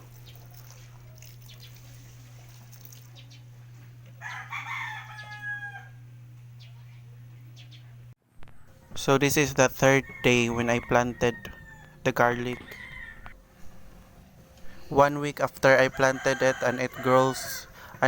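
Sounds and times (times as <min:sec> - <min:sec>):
steady low hum: 0:00.0 - 0:18.0
rooster crowing: 0:04.2 - 0:06.1, 0:08.4 - 0:13.4, 0:15.8 - 0:18.0.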